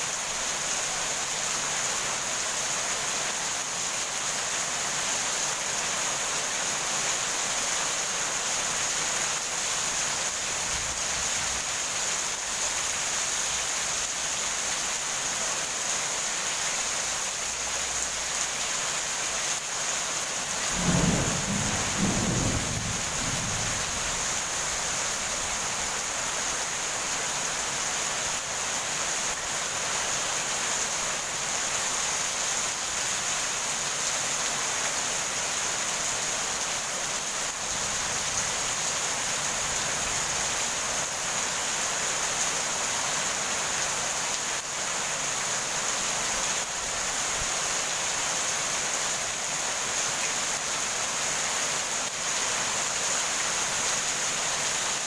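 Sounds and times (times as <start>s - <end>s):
heavy rain: 0.0s - 55.0s
thunder rumble: 20.6s - 25.6s.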